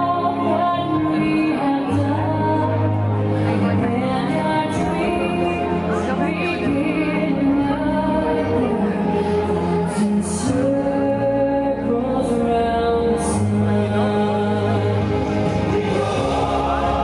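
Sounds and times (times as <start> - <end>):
orchestral music: 13.8 - 17.0
choir singing held notes: 15.2 - 17.0.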